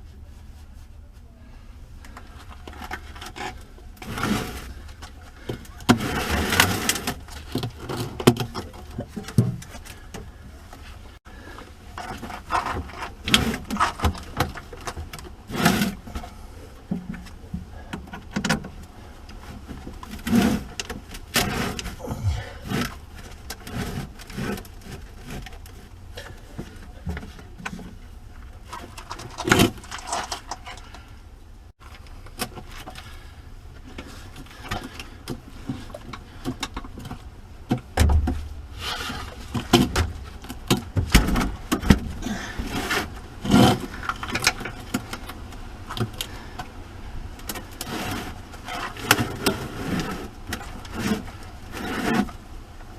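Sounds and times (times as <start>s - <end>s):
knocks clinks and scrapes of tools: 28.6s - 31.1s.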